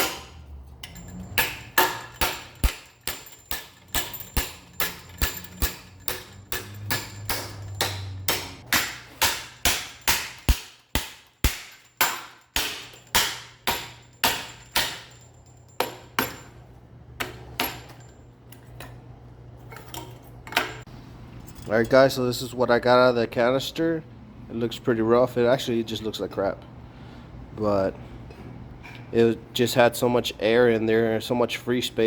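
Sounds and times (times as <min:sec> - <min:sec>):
hammer ringing on anvil: 0:00.0 - 0:16.6
steady low hum: 0:00.0 - 0:32.0.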